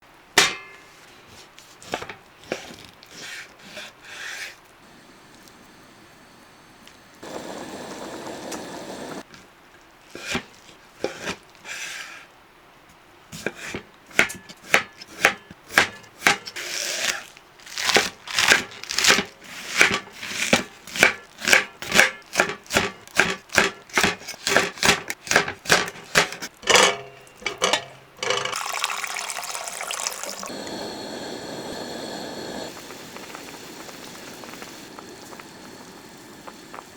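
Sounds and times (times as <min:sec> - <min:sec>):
rustling noise: 0:00.8 - 0:04.8
knife chopping on wooden board: 0:17.9 - 0:26.5.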